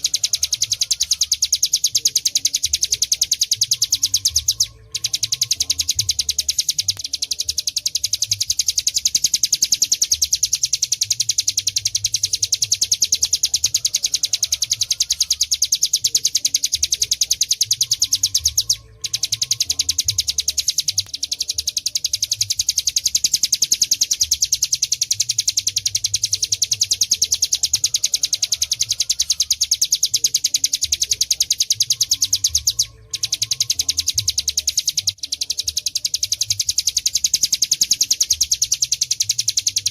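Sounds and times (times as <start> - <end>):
bird singing high trill: 0.0 - 39.9.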